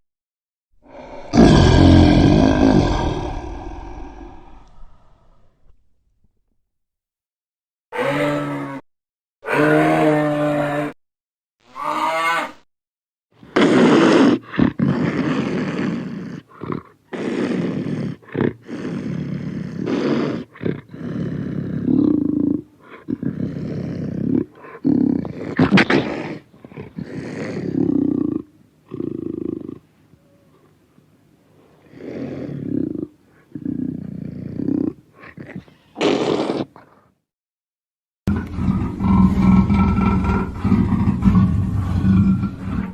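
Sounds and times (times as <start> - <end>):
animal roars and growls: 0.8 - 5.9, 8.0 - 8.8, 9.4 - 11.0, 11.7 - 12.6, 38.3 - 42.9.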